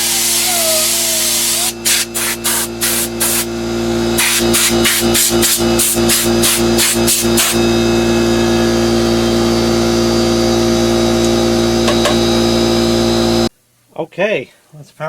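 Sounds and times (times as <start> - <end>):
compressed air blasts: 0.0 - 9.5
motor humming: 0.0 - 13.5.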